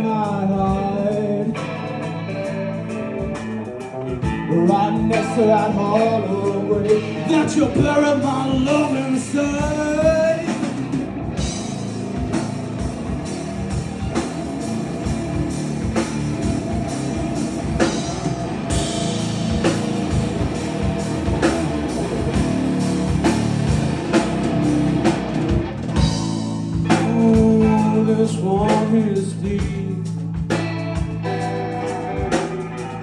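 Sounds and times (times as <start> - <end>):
bass guitar: 0.0 - 33.0
drum kit: 0.0 - 33.0
electric guitar: 0.0 - 33.0.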